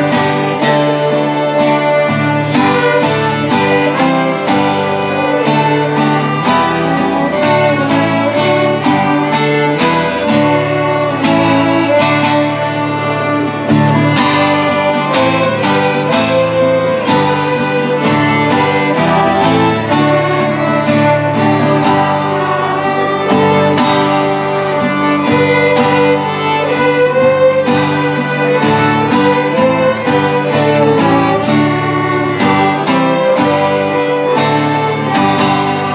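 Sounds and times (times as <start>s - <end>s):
acoustic guitar strumming: 0.0s - 35.9s
fiddles playing a tune: 0.0s - 35.9s.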